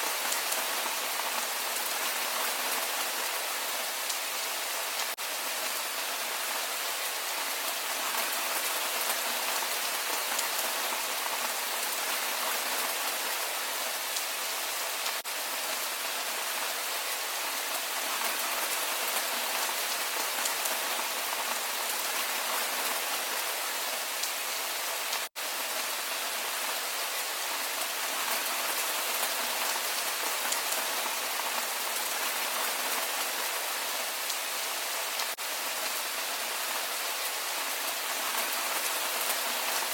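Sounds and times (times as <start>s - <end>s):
dense rainfall: 0.0s - 39.9s.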